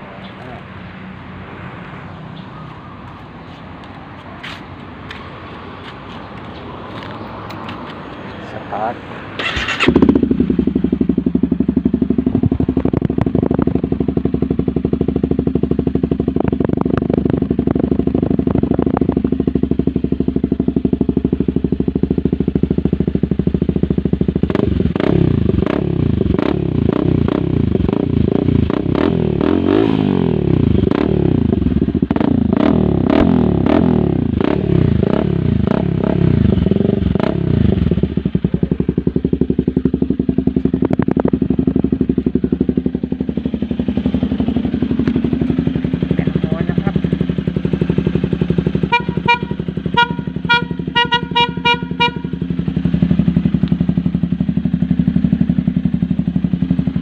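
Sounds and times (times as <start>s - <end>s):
motorcycle engine idling and revving: 0.0s - 57.0s
exhaust pops and clicks: 12.7s - 13.8s.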